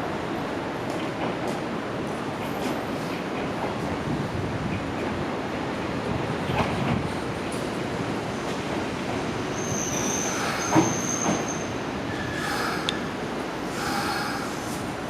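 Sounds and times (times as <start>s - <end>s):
electric train slowing: 8.5s - 15.0s
wheels and brakes squealing: 9.4s - 13.1s
train clunk: 10.2s - 11.5s.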